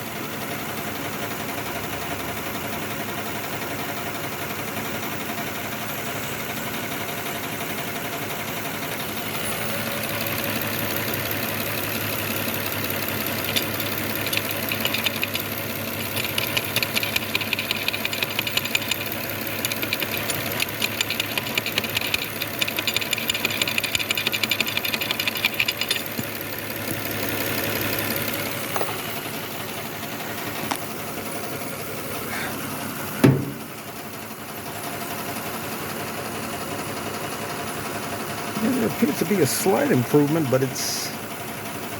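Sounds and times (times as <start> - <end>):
engine idling with misfire: 0.0 - 41.9
rapid tapping on injector: 10.0 - 29.1
loud thump: 33.2 - 33.7.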